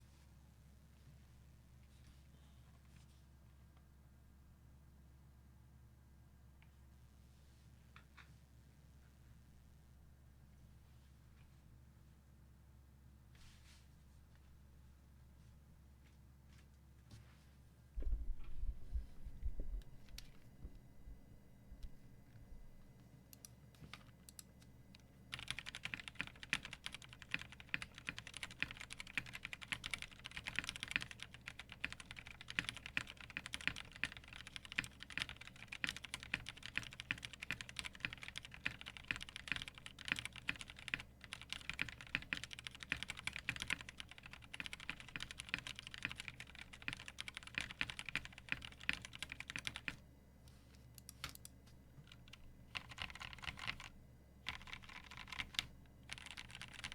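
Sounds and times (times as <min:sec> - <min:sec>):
mechanical keyboard typing: 0:25.3 - 0:50.0, 0:52.1 - 0:53.9, 0:54.5 - 0:56.9.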